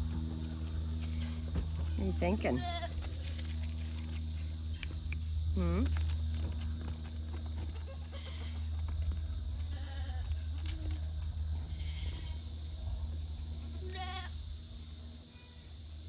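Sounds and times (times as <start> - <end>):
steady low rumble: 0.0 - 16.0
goats bleating: 2.1 - 3.3, 7.7 - 8.8, 9.7 - 10.5, 11.6 - 12.5, 13.7 - 14.4.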